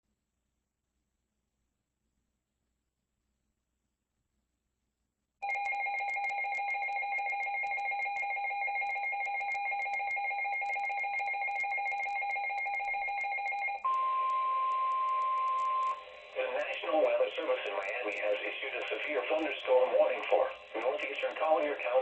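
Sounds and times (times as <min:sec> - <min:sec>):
steady single alarm tone: 0:05.4 - 0:16.3
harsh two-tone alarm: 0:05.4 - 0:17.0.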